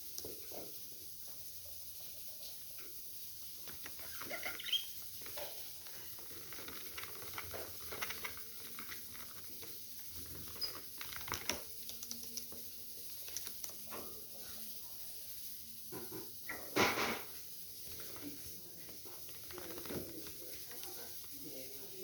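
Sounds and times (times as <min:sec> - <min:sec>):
budgerigars chirping: 0:04.0 - 0:05.1.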